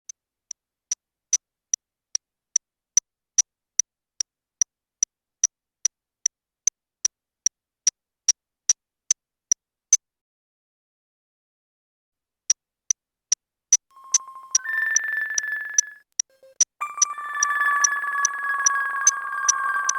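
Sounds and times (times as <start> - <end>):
high-pitched electronic ticks: 13.8 - 19.9.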